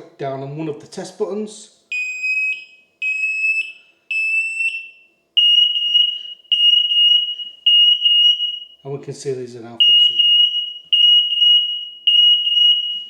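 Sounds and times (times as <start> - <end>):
smoke alarms shrill pulsing tone: 2.0 - 8.9, 9.8 - 13.0.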